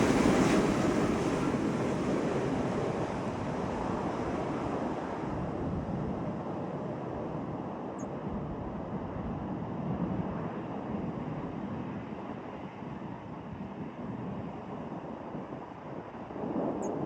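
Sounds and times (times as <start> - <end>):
jet engines roaring: 0.0 - 5.2
wind on microphone: 0.0 - 17.0.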